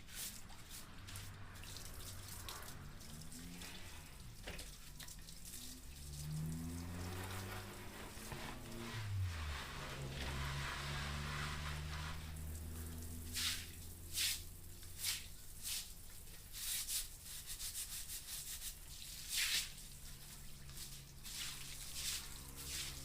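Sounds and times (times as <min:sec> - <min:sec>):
short scraping strokes: 0:07.1 - 0:12.5.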